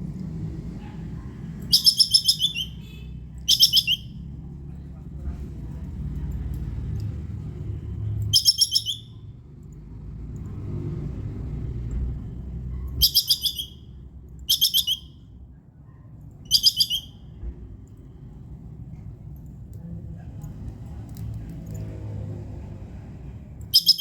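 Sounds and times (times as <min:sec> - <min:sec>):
squirrel chattering call: 0:01.7 - 0:04.2, 0:08.3 - 0:09.2, 0:13.0 - 0:13.9, 0:14.5 - 0:15.1, 0:16.5 - 0:17.2, 0:23.7 - 0:24.0.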